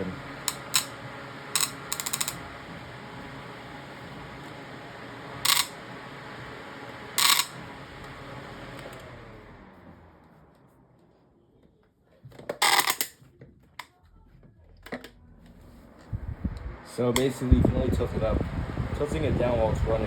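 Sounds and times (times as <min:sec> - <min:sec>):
fan whirring: 0:00.0 - 0:11.6, 0:14.8 - 0:20.0
fan joint clicking and ratcheting: 0:00.4 - 0:01.0, 0:01.6 - 0:02.4, 0:05.5 - 0:05.8.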